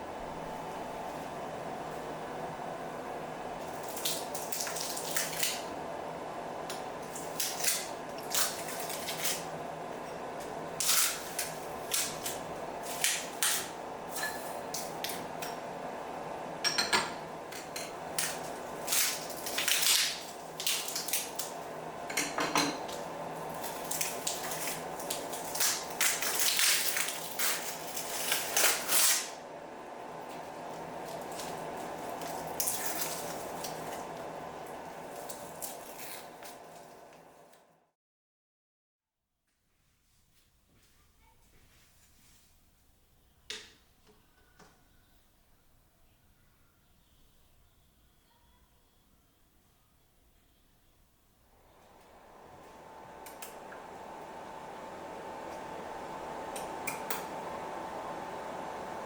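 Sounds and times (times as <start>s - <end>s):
mill humming: 51.6s - 59.0s.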